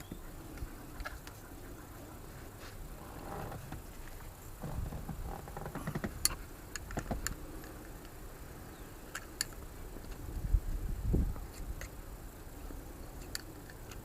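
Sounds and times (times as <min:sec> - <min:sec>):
sharp clicks of seatbelt parts: 0:05.7 - 0:08.2.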